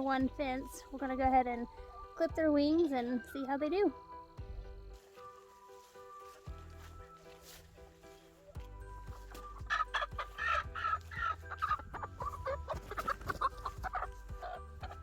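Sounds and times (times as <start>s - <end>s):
hens clucking: 9.6s - 15.0s.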